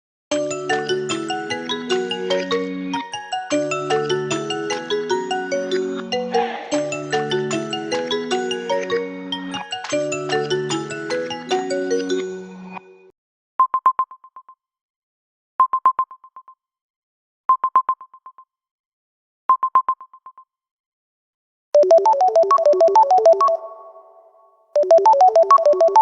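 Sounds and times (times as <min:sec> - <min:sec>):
bright synth ringtone melody: 0:00.3 - 0:12.8, 0:21.8 - 0:26.0
rapid electronic ringtone beeps: 0:21.8 - 0:24.0, 0:24.8 - 0:26.0.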